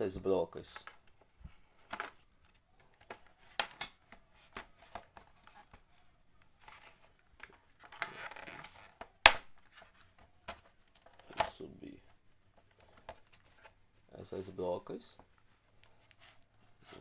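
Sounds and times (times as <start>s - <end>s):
scraping rustle: 15.0s - 17.0s.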